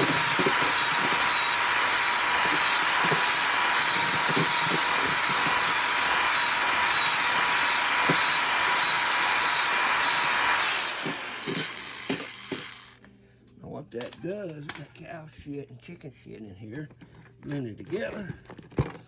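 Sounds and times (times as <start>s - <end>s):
electric drill mixing dirt: 0.0s - 13.0s.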